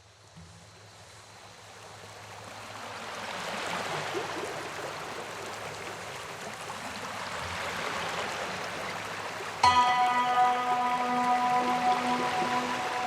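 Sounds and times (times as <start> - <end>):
waterfall rushing water: 5.0 - 13.0.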